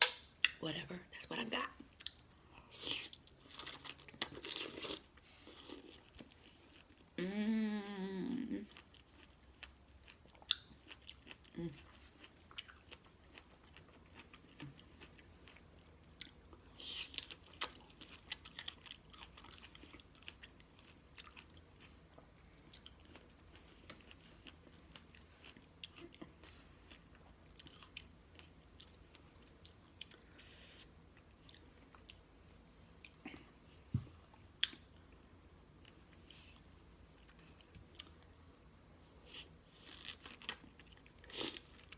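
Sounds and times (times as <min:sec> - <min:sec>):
chewing and lip-smacking: 0:08.7 - 0:32.3, 0:34.5 - 0:36.2.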